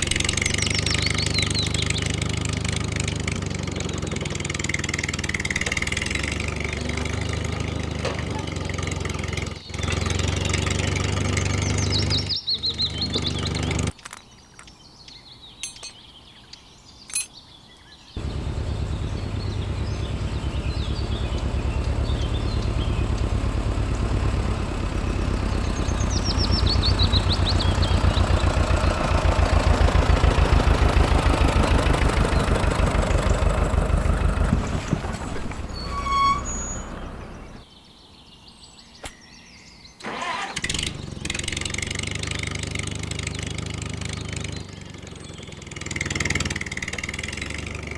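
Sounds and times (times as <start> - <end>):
small engine running: 0.0 - 13.9, 18.2 - 37.6, 40.0 - 47.9.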